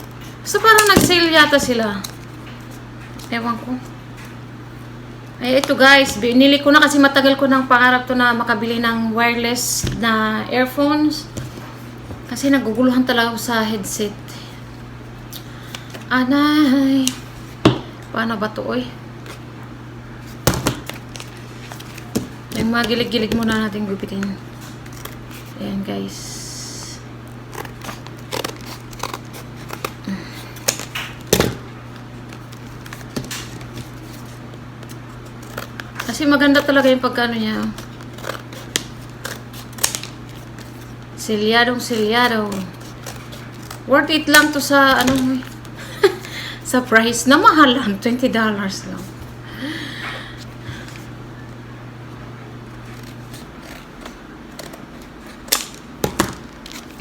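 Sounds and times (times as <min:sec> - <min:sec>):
steady low hum: 0:00.0 - 0:57.0
plastic packaging being cut: 0:27.5 - 0:31.3
scissors snipping packaging: 0:27.5 - 0:31.5, 0:32.2 - 0:36.9, 0:37.6 - 0:40.8.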